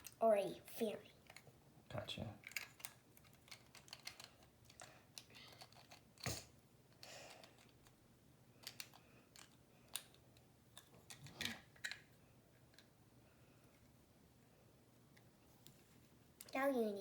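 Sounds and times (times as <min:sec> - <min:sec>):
plastic bricks clicking: 0:02.4 - 0:06.4.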